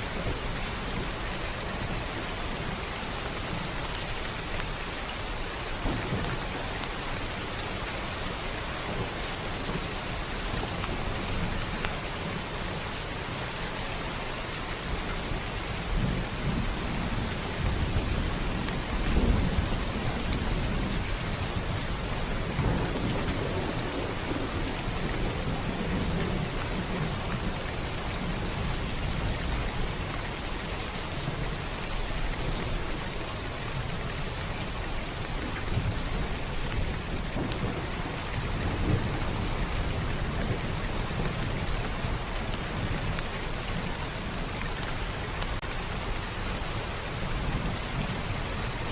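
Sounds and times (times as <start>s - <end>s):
heavy rain drumming on a roof: 0.0s - 48.9s
low thunder rumbling: 5.7s - 12.4s, 15.2s - 44.6s.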